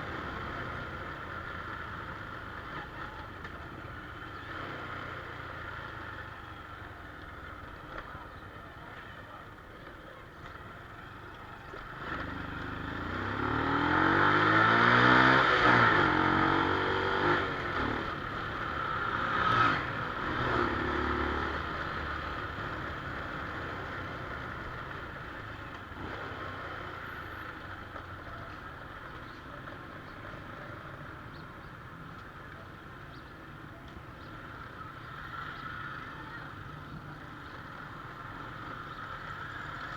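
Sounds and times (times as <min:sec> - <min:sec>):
motorcycle engine revving: 0:11.7 - 0:32.0.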